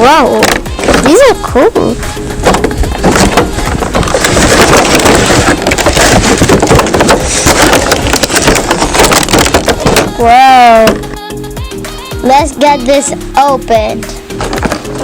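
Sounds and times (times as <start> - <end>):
packaging crackling and rustling: 0.0 - 11.1, 14.3 - 15.0.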